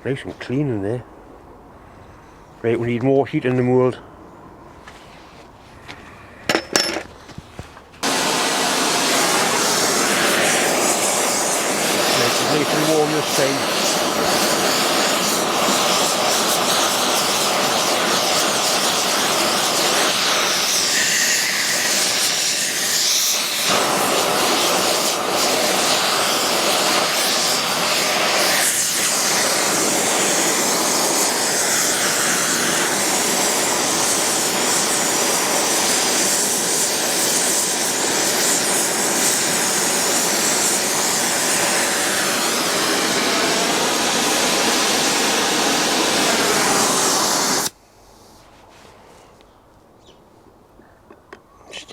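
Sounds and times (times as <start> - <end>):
gas torch flame rushing: 6.5 - 47.8.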